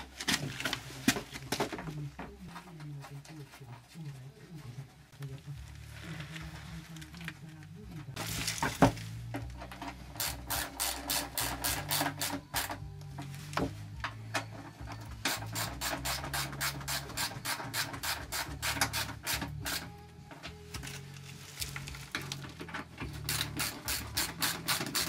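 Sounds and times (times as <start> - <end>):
hand ratchet wrench clicking: 10.1 - 12.8.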